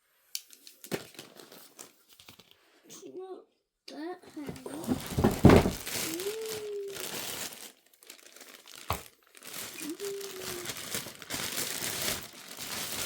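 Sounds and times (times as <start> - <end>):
packaging crinkling and rustling: 0.4 - 2.6, 4.4 - 13.0.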